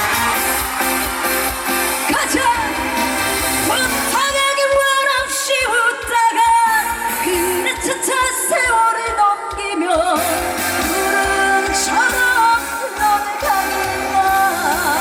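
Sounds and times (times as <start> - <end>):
pop accompaniment with steady beat: 0.0 - 15.0
woman singing through a pa: 3.7 - 15.0.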